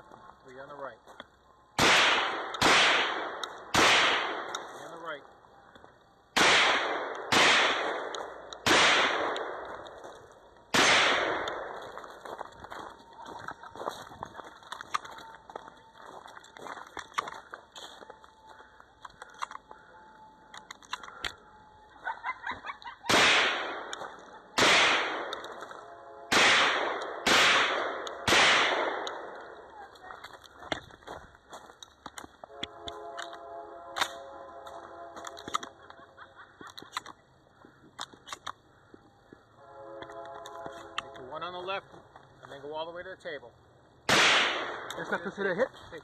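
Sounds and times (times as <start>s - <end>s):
gunshots with echo: 1.8s - 4.8s, 6.4s - 10.0s, 10.7s - 12.1s, 23.1s - 25.6s, 26.3s - 29.6s, 44.1s - 45.0s.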